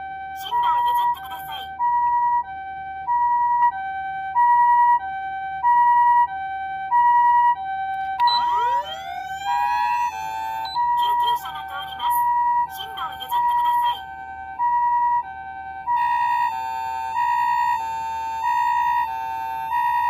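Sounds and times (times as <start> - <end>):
rising siren wail: 0.0 - 20.0
two-tone ambulance siren: 0.0 - 20.0.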